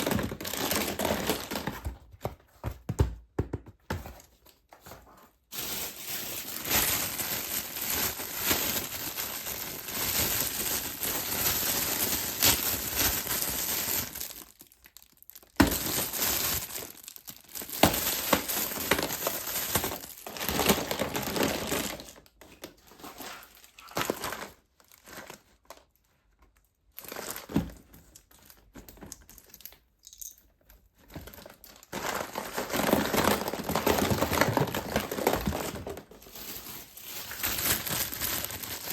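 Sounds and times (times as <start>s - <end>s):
wrappers crinkling and tearing: 0.0s - 1.8s, 5.3s - 26.0s, 31.0s - 38.9s.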